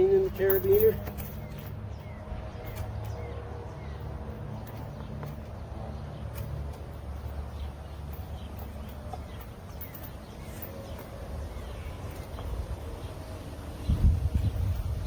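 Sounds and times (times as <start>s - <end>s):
steel chain clinking: 0.0s - 12.6s, 14.3s - 15.0s
wind rumble on microphone: 11.5s - 15.0s.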